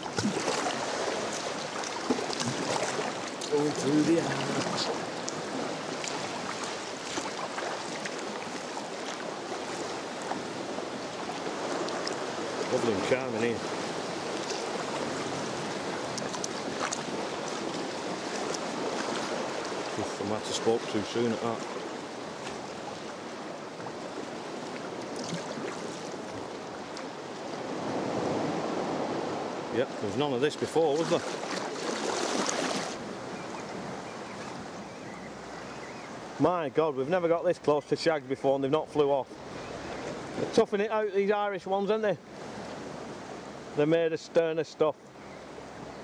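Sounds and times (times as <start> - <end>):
paddle drips and splashes: 0.0 - 20.6, 21.4 - 29.3, 30.9 - 34.7
water lapping around kayak: 0.0 - 46.0.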